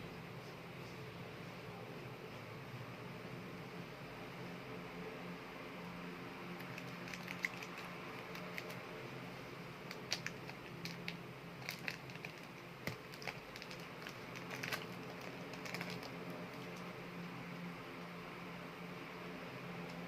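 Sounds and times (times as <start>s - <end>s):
steady low hum: 0.0s - 20.0s
clay clicks and crackles: 6.6s - 9.0s, 9.8s - 17.0s.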